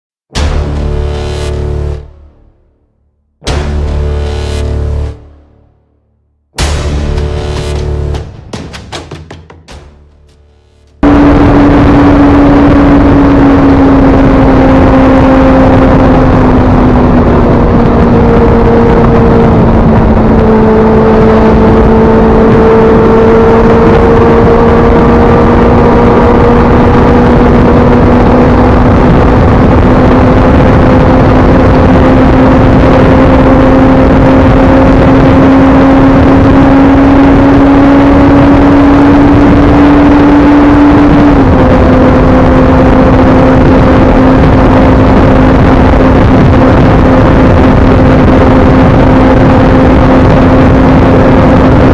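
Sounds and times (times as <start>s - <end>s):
motorcycle engine note: 0.3s - 32.7s
wind and road noise: 0.3s - 51.9s.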